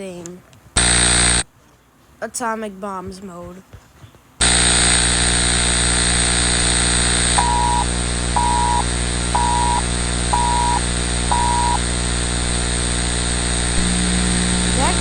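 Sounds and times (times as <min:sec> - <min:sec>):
harsh alarm buzzing: 0:00.8 - 0:01.5, 0:04.4 - 0:15.0
short beeps: 0:07.3 - 0:11.8.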